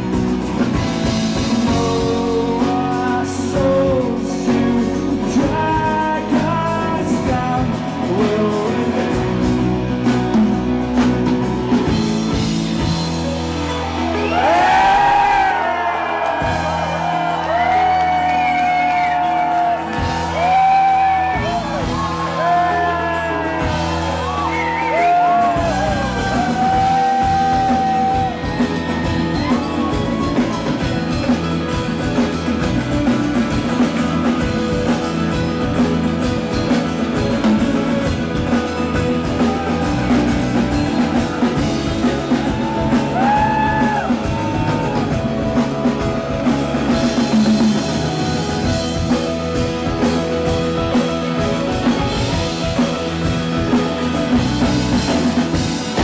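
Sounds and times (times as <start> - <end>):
live rock band playing: 0.0 - 56.0
voices singing and whooping: 14.2 - 31.0, 39.3 - 45.2.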